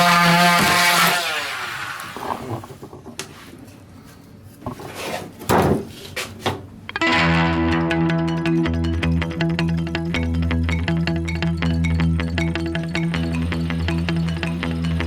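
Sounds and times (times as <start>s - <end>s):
oscillating multi-tool buzzing: 13.0s - 15.0s.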